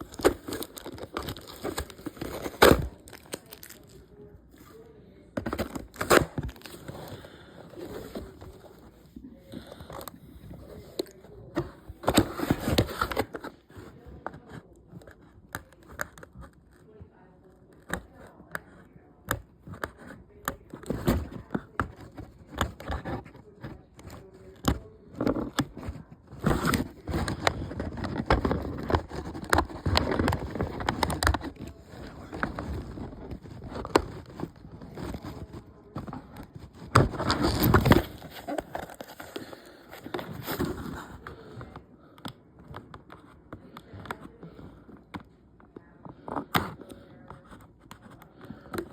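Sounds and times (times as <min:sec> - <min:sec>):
packaging crinkling and tearing: 0:00.0 - 0:04.1, 0:05.4 - 0:08.8, 0:20.7 - 0:41.5.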